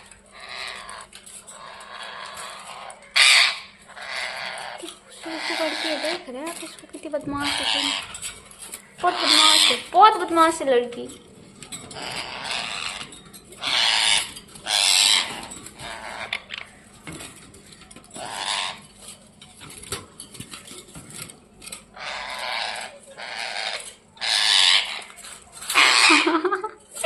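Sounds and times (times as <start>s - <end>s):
parrot squawking: 0.0s - 8.2s, 8.8s - 10.7s, 11.9s - 16.5s, 18.2s - 18.9s, 21.9s - 26.6s.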